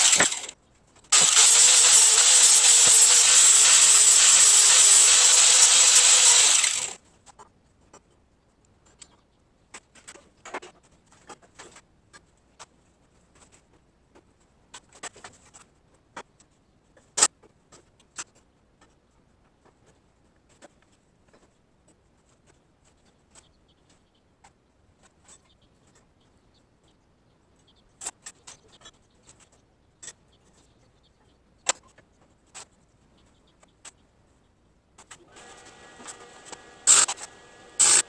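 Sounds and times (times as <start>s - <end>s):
power tool grinding metal: 0.0s - 0.5s, 1.1s - 7.0s, 35.4s - 38.0s.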